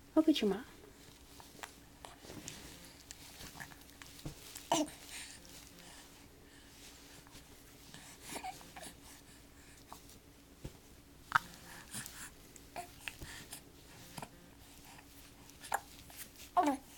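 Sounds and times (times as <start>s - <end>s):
baby breathy vocal sounds: 4.6s - 6.7s, 7.9s - 10.1s, 11.3s - 16.9s.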